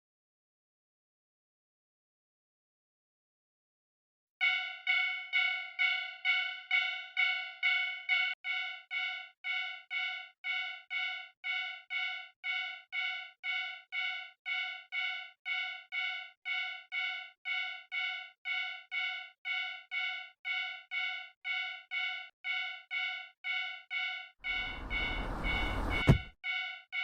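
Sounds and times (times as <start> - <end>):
railroad crossing warning bell: 4.4 - 27.0.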